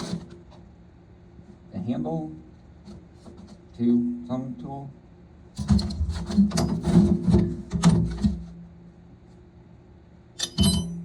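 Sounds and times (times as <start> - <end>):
ringing metal clink: 10.4 - 11.0
tools clattering in toolbox: 10.4 - 11.0.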